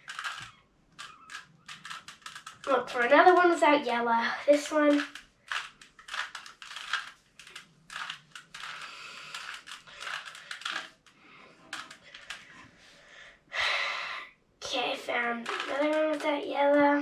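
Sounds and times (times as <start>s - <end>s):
plastic puzzle cube clicking: 0.0s - 3.6s, 4.5s - 12.5s, 15.2s - 16.5s.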